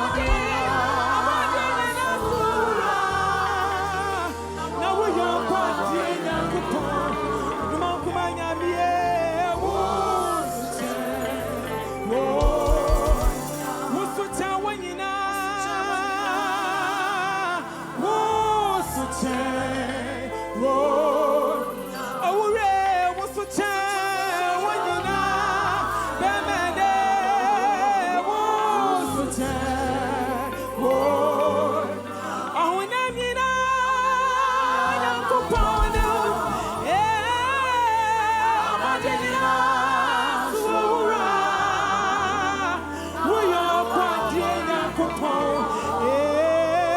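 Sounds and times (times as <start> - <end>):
low bass notes: 0.0 - 13.7, 35.2 - 39.8
person singing with vibrato: 0.0 - 46.9.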